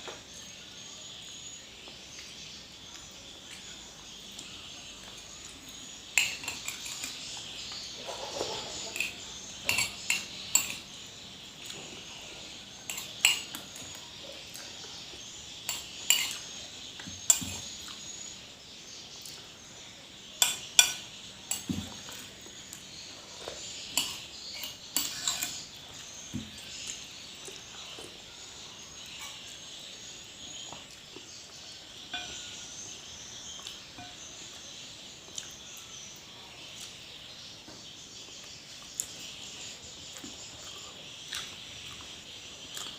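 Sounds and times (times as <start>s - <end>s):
cutlery clinking on a plate: 6.2s - 7.2s, 8.0s - 10.8s, 12.8s - 13.7s, 15.7s - 17.8s, 20.4s - 22.1s, 24.0s - 25.6s, 32.1s - 32.6s, 34.0s - 34.3s.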